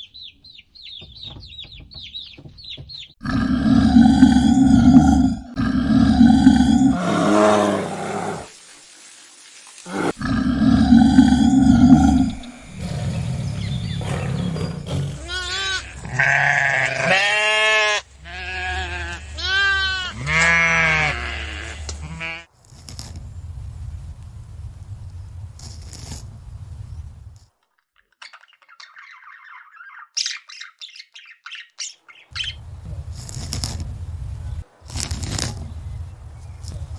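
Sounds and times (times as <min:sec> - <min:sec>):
low rough animal call: 0:03.2 - 0:08.5, 0:09.9 - 0:15.4.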